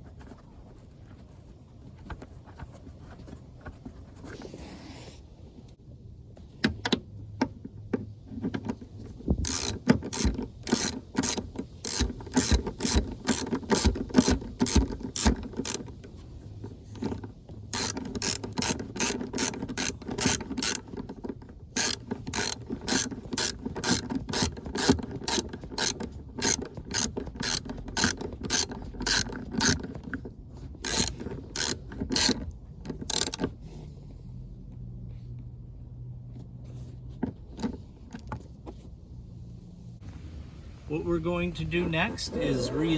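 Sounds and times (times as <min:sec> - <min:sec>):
socket ratchet clicking: 0:09.4 - 0:16.0, 0:17.0 - 0:30.2, 0:30.8 - 0:33.5.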